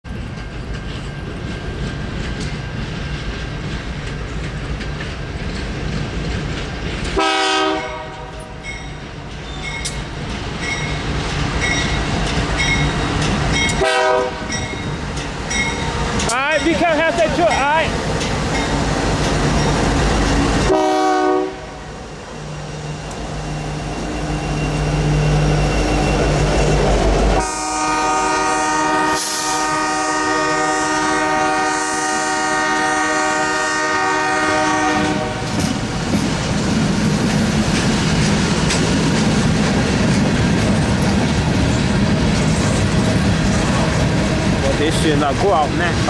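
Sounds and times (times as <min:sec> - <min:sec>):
train rumbling: 0:00.0 - 0:46.0
wheels clattering on rails: 0:00.1 - 0:20.7, 0:34.9 - 0:46.0
train horn blasts: 0:07.2 - 0:08.7, 0:13.7 - 0:14.6, 0:20.6 - 0:21.8, 0:27.4 - 0:35.6.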